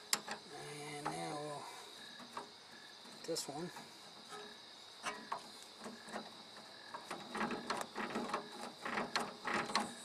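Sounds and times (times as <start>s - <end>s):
handle screwing clicks and scrapes: 0.0s - 1.5s, 4.1s - 10.0s.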